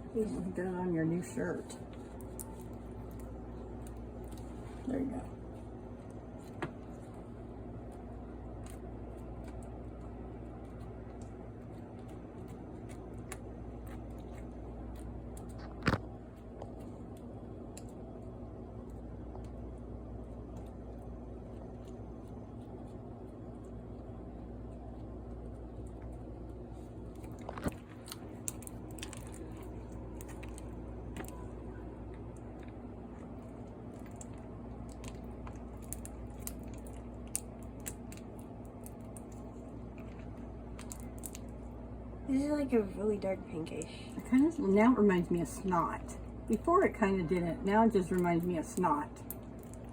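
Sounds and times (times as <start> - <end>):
room hum: 0.0 - 49.9
slime squelching: 25.0 - 42.8.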